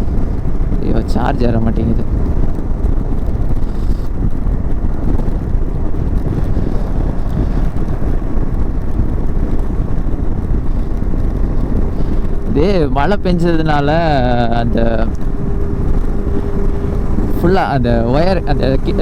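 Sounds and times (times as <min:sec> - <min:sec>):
motorcycle low rumble: 0:00.0 - 0:19.0
wind rushing over microphone: 0:00.0 - 0:19.0.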